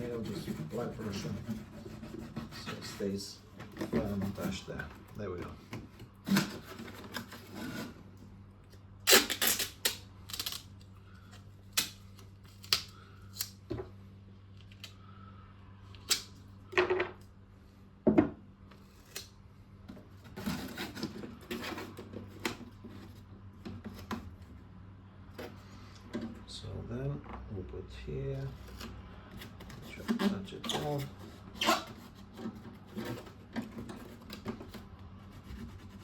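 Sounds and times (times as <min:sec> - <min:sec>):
cardboard and tape handled: 0:00.0 - 0:08.0, 0:18.8 - 0:24.6, 0:28.4 - 0:36.0.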